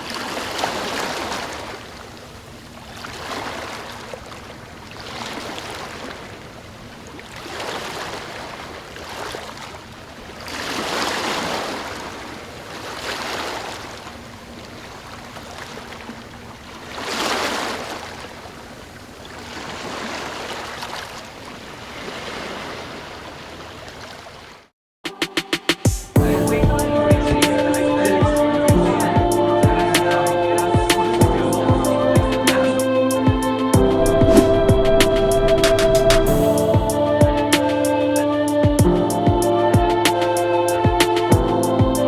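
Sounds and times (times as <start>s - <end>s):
sea waves breaking on beach: 0.0s - 24.6s.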